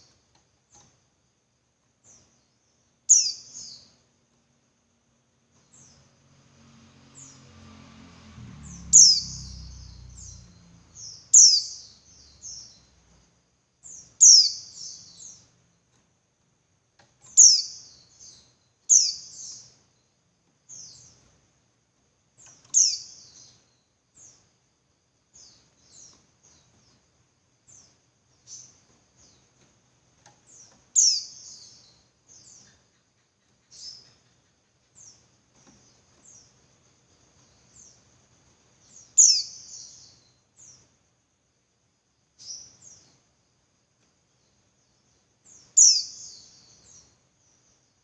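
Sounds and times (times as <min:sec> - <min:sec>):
bird chirping: 0:01.8 - 0:04.6, 0:05.5 - 0:16.2, 0:17.0 - 0:41.0, 0:42.2 - 0:48.0
low rumble: 0:08.0 - 0:11.2.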